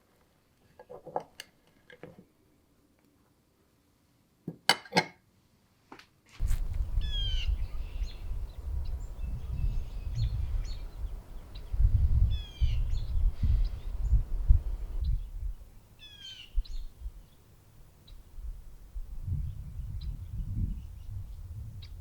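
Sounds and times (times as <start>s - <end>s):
wind rumbling on microphone: 6.4s - 17.4s, 18.0s - 22.0s
wild birds calling: 6.6s - 15.1s, 16.0s - 17.4s.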